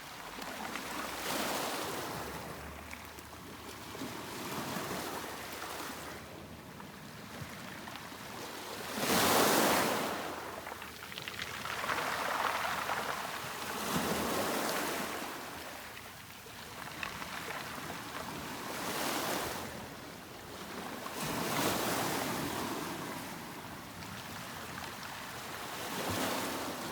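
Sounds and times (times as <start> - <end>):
sea waves breaking: 8.9 - 16.0.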